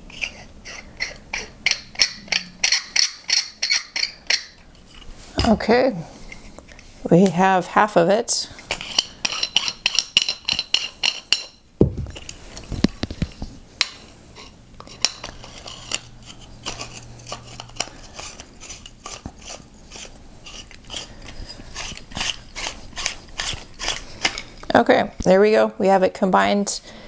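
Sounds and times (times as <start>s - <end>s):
metal parts clicking and scraping: 0.1s - 5.1s.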